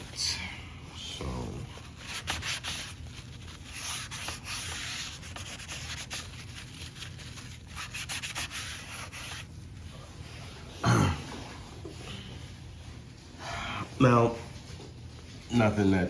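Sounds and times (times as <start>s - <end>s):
rubbing on a hard surface: 1.6s - 10.6s.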